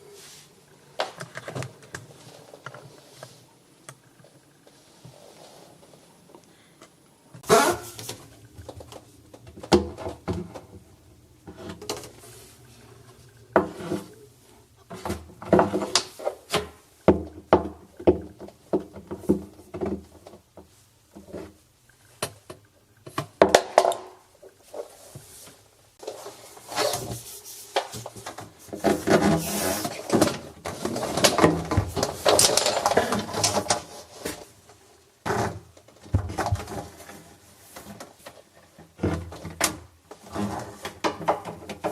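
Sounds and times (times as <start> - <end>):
rubbing and scraping: 24.6 - 34.5.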